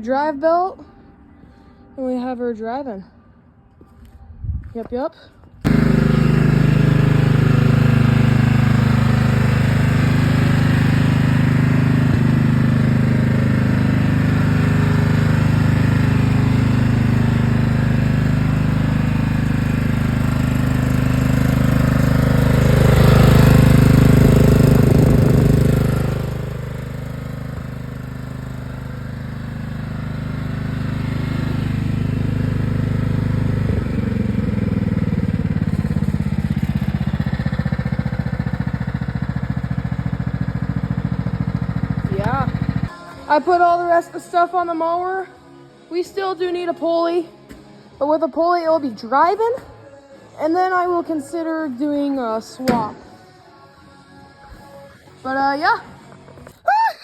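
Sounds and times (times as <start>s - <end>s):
riding lawn mower engine running: 5.7s - 42.9s, 52.6s - 53.2s.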